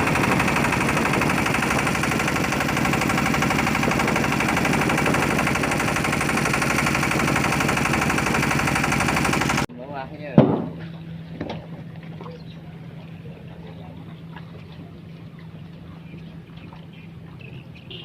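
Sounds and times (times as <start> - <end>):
boat engine knocking: 0.0 - 9.7.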